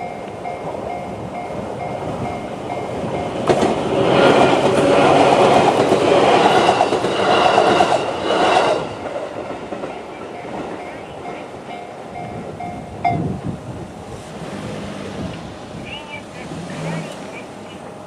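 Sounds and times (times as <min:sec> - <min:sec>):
level crossing warning bell: 0:00.0 - 0:04.6, 0:09.0 - 0:13.3, 0:15.5 - 0:18.0
train wheels clacking over rails: 0:00.0 - 0:13.4.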